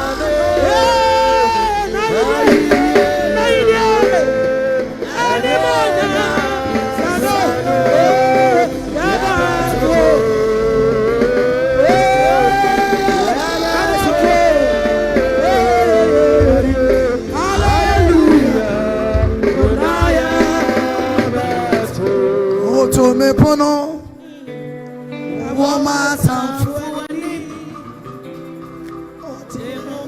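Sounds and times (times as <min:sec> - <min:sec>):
drums and bass: 0:00.0 - 0:23.2
worship music with singing: 0:00.0 - 0:30.0.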